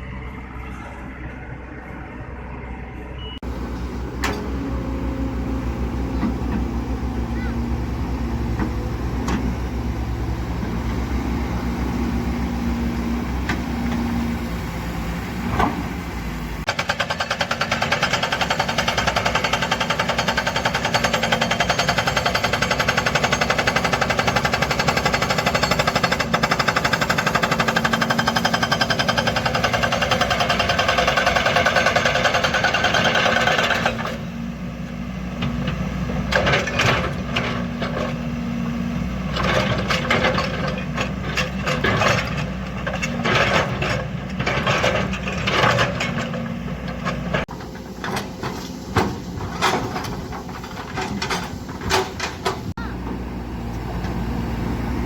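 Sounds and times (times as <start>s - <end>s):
excavator diesel engine running: 0.0s - 55.0s
hydraulic breaker hammering rock: 16.7s - 34.2s.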